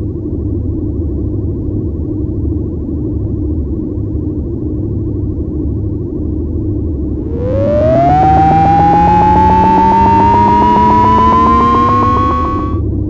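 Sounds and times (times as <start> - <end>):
low rumbling drone: 7.2 - 12.8
pulsing electronic tone rising: 7.2 - 12.8.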